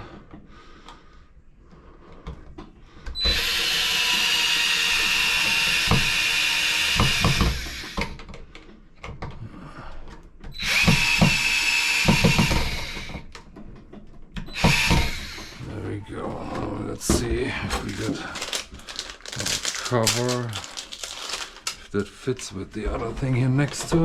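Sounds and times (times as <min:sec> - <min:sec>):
power driver whirring: 0:03.2 - 0:08.2, 0:10.6 - 0:13.4, 0:14.5 - 0:15.9.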